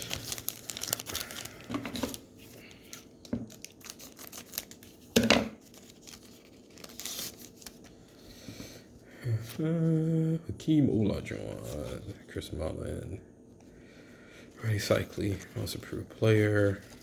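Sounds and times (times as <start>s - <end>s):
paper wrapper tearing and crinkling: 0.0s - 8.0s, 14.8s - 17.0s.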